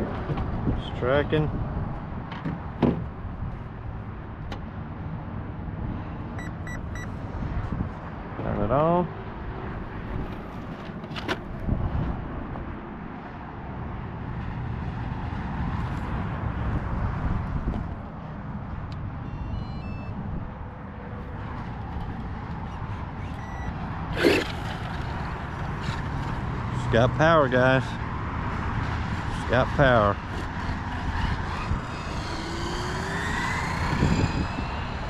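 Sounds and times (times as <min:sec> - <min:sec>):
outdoor background noise: 0:00.0 - 0:35.0
high beeps: 0:06.4 - 0:07.1, 0:19.2 - 0:20.2, 0:22.7 - 0:23.8
rc car electric motor whine: 0:29.8 - 0:35.0.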